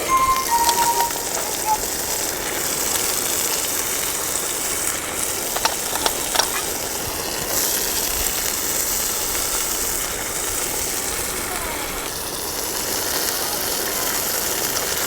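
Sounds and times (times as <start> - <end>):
food sizzling in a pan: 0.1 - 1.9
sharp clicks: 5.5 - 6.7.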